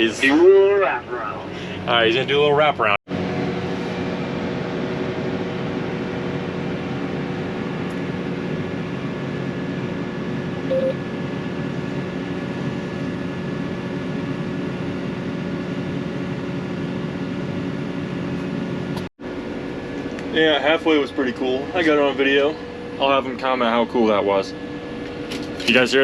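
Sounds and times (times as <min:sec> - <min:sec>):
short beep: 0:10.6 - 0:11.0.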